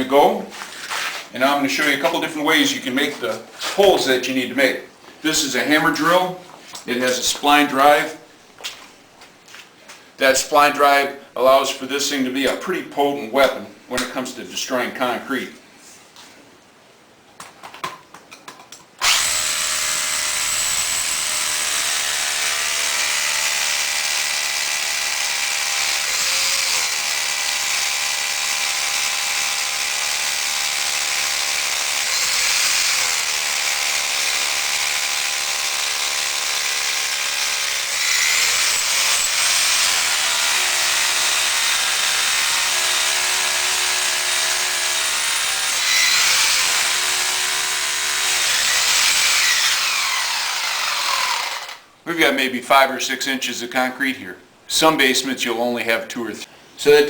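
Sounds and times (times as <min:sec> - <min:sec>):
hammer drill boring into concrete: 0:19.0 - 0:51.8.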